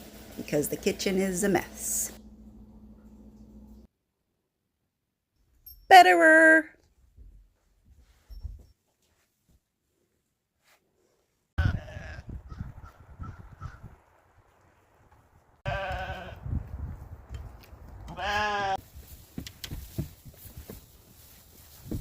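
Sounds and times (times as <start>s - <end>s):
sheep bleating: 11.6s - 12.3s, 15.6s - 16.4s, 18.1s - 18.8s
animals knocking and rustling: 18.8s - 22.0s.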